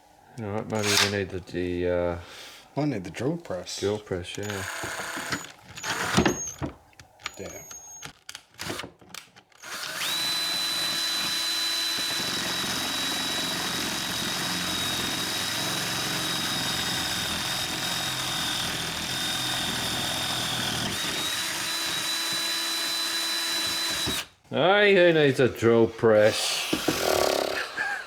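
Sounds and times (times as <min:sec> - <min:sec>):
drill bit grinding: 0:00.7 - 0:01.2, 0:04.4 - 0:06.6, 0:09.6 - 0:24.3, 0:26.4 - 0:27.9
electric drill motor whine: 0:00.8 - 0:01.1, 0:04.4 - 0:06.6, 0:09.6 - 0:24.3, 0:26.6 - 0:27.8.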